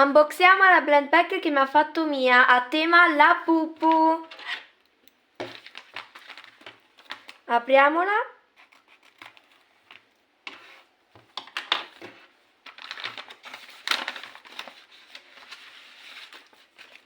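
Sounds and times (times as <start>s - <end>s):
packaging crinkling: 5.4s - 7.5s, 11.4s - 17.0s.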